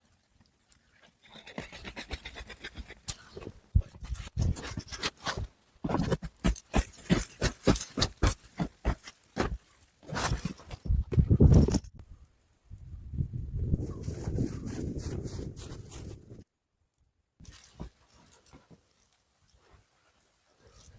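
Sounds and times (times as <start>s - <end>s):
footsteps crunching in snow: 13.8s - 16.4s.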